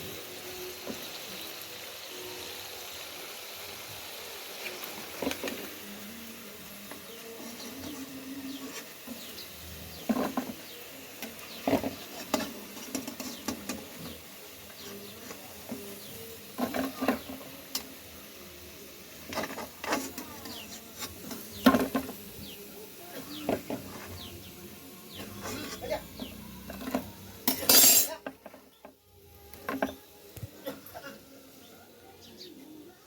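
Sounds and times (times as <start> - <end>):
kitchen utensils clinking: 11.6 - 14.2, 25.1 - 28.7.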